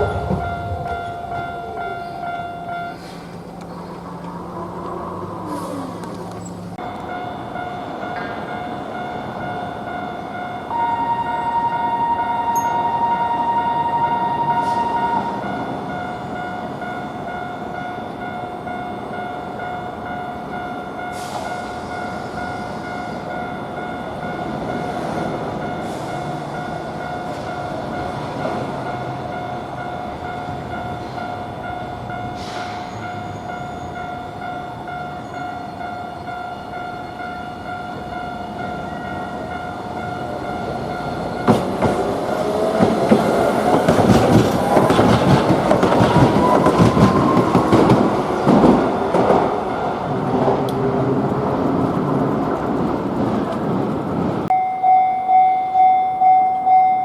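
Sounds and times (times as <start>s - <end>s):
higher bell tone: 0.0s - 3.3s, 6.7s - 24.8s, 54.5s - 57.0s
level-crossing warning bell: 0.0s - 4.9s, 6.4s - 50.5s, 54.4s - 57.0s
tram wheels clacking: 0.0s - 54.5s.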